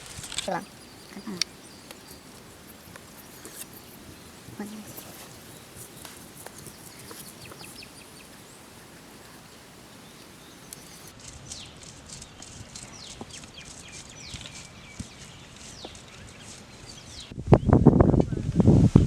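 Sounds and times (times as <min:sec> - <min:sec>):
birds chirping: 0:00.0 - 0:11.1
faint outdoor background: 0:00.0 - 0:18.9.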